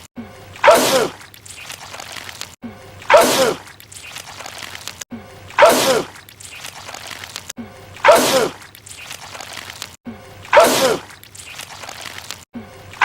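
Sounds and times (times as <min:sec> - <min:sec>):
man sneezing: 0:08.0 - 0:08.6, 0:10.5 - 0:11.1.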